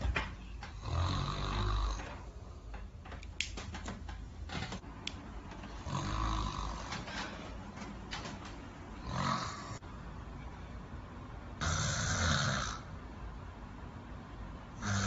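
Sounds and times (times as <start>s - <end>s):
person snoring: 0.8s - 2.2s, 5.8s - 7.0s, 9.0s - 9.8s, 11.6s - 12.9s, 14.8s - 15.0s.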